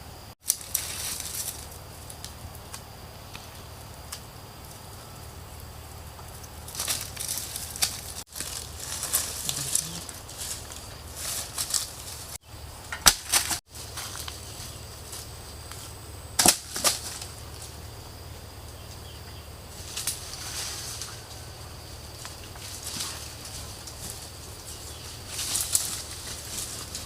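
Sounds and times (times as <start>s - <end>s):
campfire crackling: 0.2s - 27.0s
sharp fire pops: 12.9s - 13.6s, 16.4s - 17.3s.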